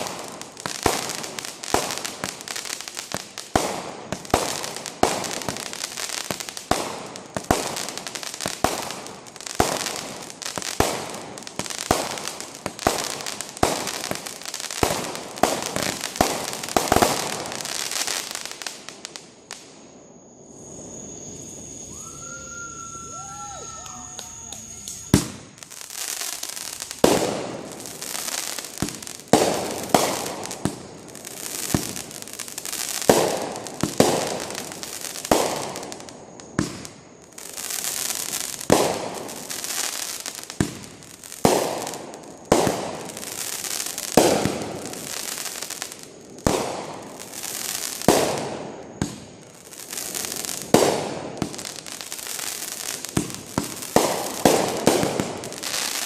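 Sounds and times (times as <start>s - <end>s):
fireworks bangs: 0.0s - 19.9s, 20.5s - 56.0s.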